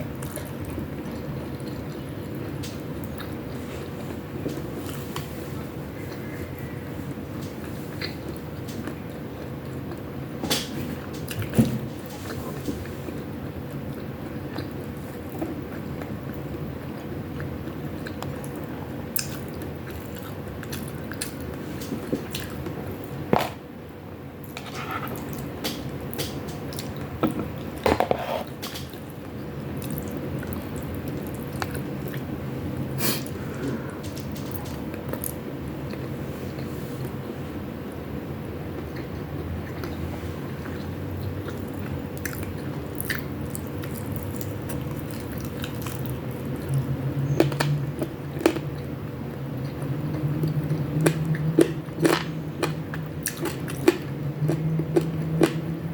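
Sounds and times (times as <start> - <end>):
steady low hum: 0.0 - 55.9
person chewing: 12.1 - 23.5, 40.6 - 48.9, 49.6 - 55.7.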